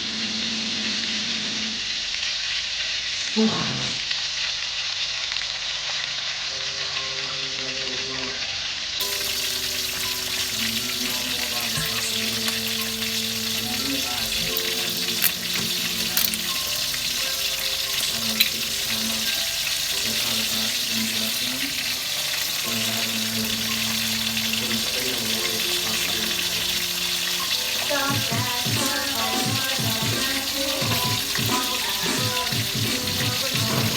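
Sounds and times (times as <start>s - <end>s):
food sizzling in a pan: 0.0s - 33.9s
utensil clicking against pan: 10.0s - 23.0s.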